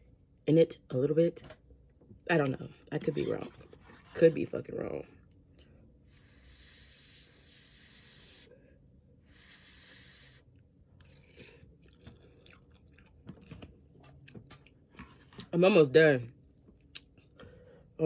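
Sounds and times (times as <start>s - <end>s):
chewing noodles: 11.0s - 15.5s.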